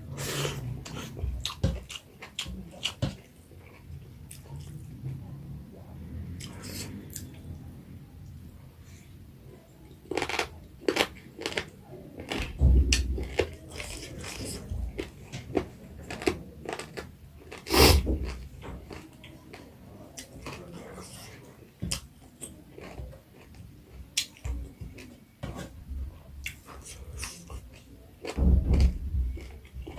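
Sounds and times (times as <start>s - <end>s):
person chewing and lip-smacking: 0.5s - 4.9s, 10.1s - 21.3s, 21.9s - 23.6s, 26.4s - 29.9s.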